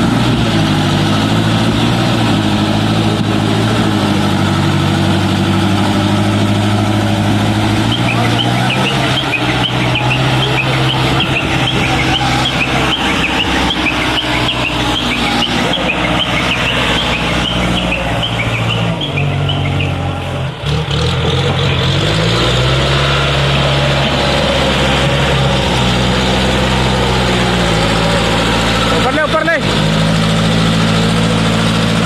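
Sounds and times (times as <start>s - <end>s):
diesel engine running: 0.0s - 32.0s
rapid high chirps: 7.8s - 20.0s.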